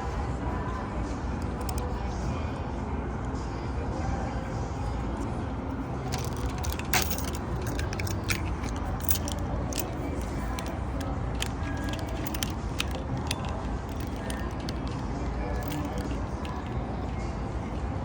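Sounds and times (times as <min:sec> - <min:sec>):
metallic clicks of keys in lock: 0:01.4 - 0:01.9, 0:06.0 - 0:17.2.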